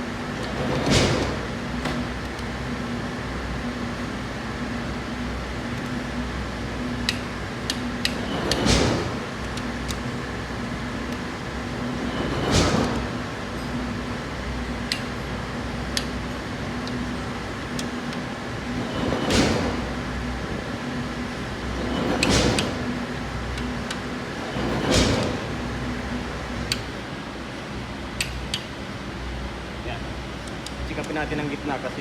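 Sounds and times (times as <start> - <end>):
workshop hum: 0.0 - 32.0.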